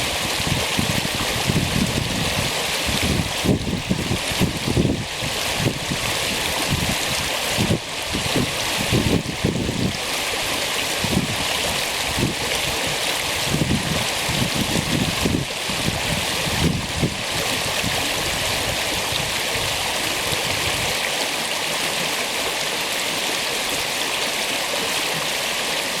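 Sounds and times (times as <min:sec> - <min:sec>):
wind rumbling on microphone: 0:00.0 - 0:21.1
creek water rushing: 0:00.0 - 0:26.0.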